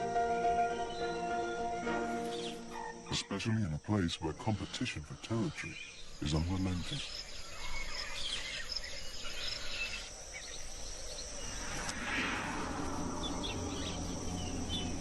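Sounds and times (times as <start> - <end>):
high-pitched insect drone: 0.0 - 15.0
soft hiss: 4.0 - 15.0.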